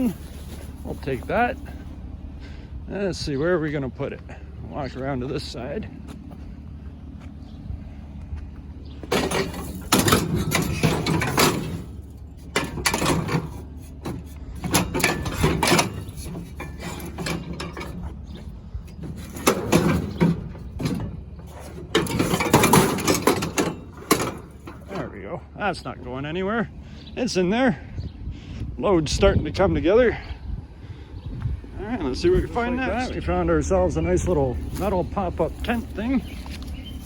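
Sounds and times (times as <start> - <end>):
scrap metal clanking and rattling: 0.0 - 2.7, 8.8 - 26.1, 31.9 - 37.0
steady low hum: 0.0 - 37.0.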